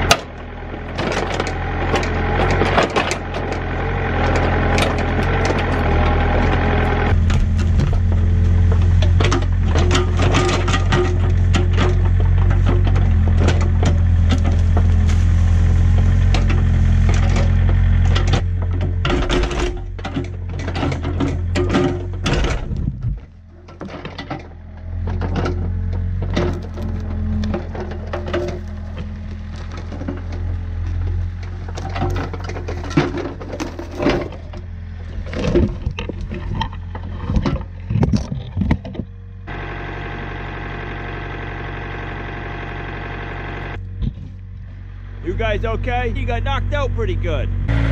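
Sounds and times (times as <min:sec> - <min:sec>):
knocks and clatter: 0:00.0 - 0:39.1
excavator engine running: 0:00.0 - 0:47.9
machine knocks and clanks: 0:16.1 - 0:34.6.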